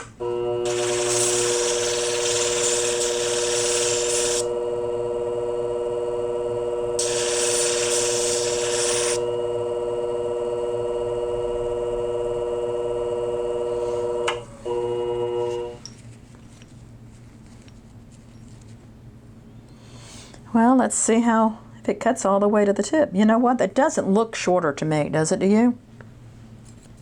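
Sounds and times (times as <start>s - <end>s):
sharpening machine motor hum: 0.0s - 15.9s
blade grinding with a hiss: 0.6s - 4.6s, 6.9s - 9.3s.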